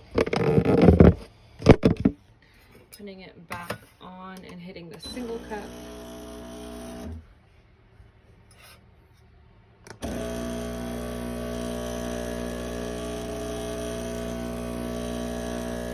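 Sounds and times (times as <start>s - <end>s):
espresso machine pump buzzing: 5.0s - 7.2s, 9.9s - 15.9s.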